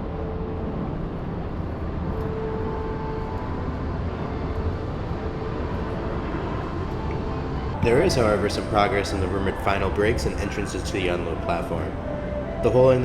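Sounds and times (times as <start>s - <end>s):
faint hum: 0.0s - 13.0s
low outdoor rumble: 0.0s - 13.0s.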